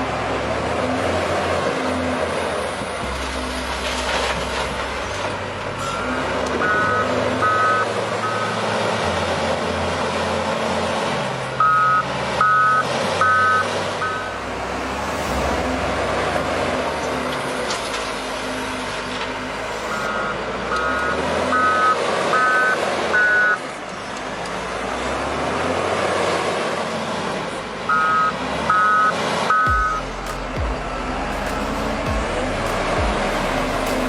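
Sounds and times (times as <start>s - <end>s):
truck engine rumbling: 0.0s - 34.0s
reversing alarm beeping: 5.8s - 8.7s, 11.6s - 14.4s, 19.5s - 23.6s, 27.9s - 34.0s.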